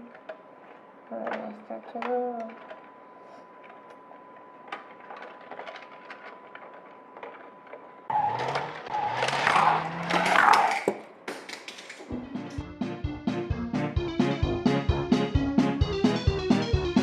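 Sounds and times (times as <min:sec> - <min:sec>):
car engine revving: 0:08.1 - 0:10.9.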